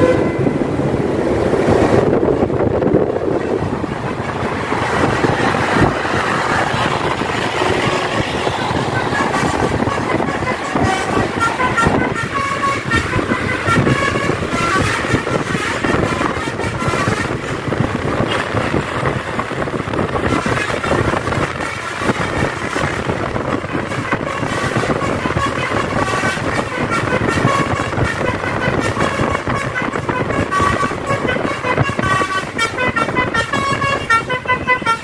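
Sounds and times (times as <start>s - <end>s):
multi-tone musical horn: 0.0s - 0.8s, 5.7s - 19.2s, 19.8s - 35.0s
road and engine noise: 0.0s - 35.0s.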